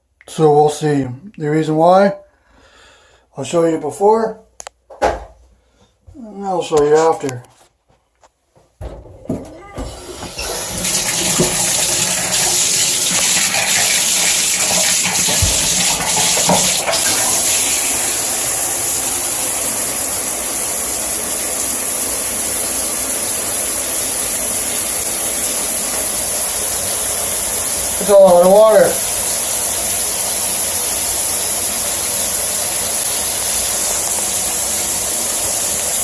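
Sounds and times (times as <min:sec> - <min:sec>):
knocks: 0:08.6 - 0:10.4, 0:15.3 - 0:15.7
shower water spraying: 0:09.8 - 0:36.0.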